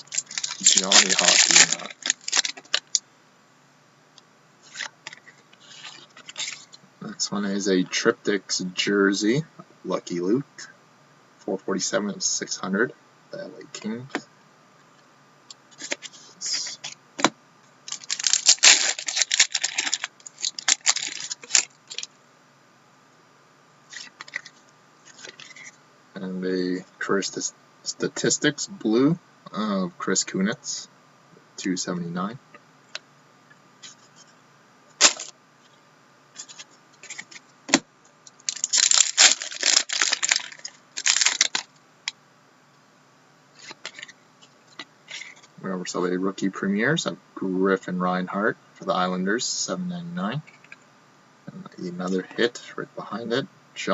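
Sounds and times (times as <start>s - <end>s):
cards scraping and clicking: 0.0s - 3.0s, 4.6s - 6.8s, 15.7s - 17.3s, 23.9s - 25.8s, 36.4s - 37.4s, 43.6s - 45.5s
wrappers crinkling and rustling: 0.0s - 3.0s, 4.7s - 6.8s, 17.9s - 22.1s, 35.0s - 35.3s, 36.4s - 37.4s, 38.4s - 41.7s.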